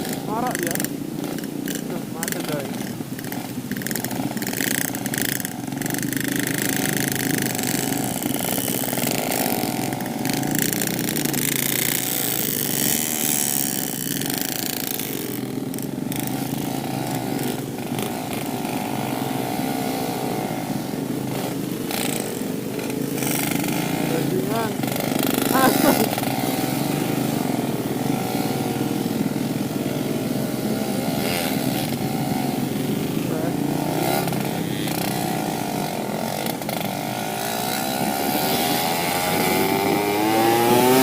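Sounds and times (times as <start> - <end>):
two-stroke motorcycle engine revving: 0.0 - 41.0.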